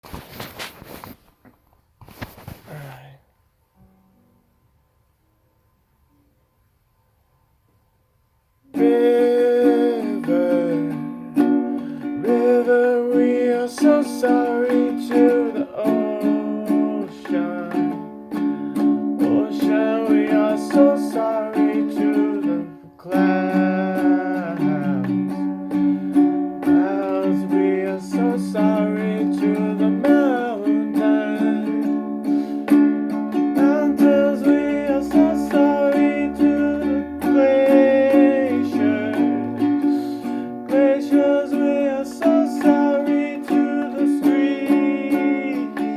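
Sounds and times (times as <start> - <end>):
plucked string instrument song: 8.7 - 45.9
low bass notes: 33.9 - 39.6.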